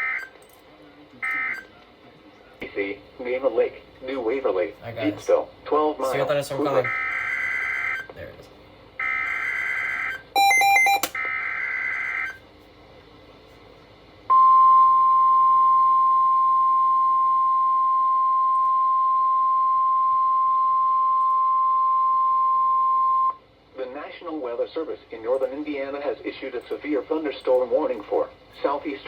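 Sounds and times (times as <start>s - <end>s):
steady warning alarm tone: 0.0s - 0.4s, 1.2s - 1.7s, 6.8s - 8.1s, 9.0s - 12.4s
multi-tone electronic beep: 10.4s - 11.2s.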